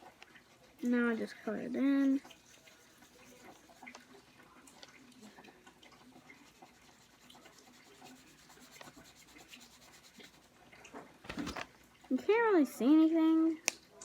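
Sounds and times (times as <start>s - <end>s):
marker scratching on paper: 2.2s - 4.1s, 6.2s - 10.5s.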